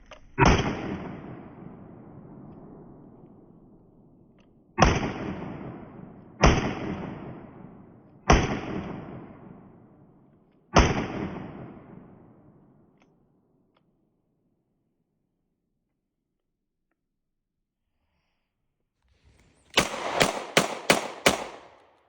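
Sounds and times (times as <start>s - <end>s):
shotgun shots echoing: 0.4s - 3.6s, 4.8s - 12.9s, 19.7s - 22.0s.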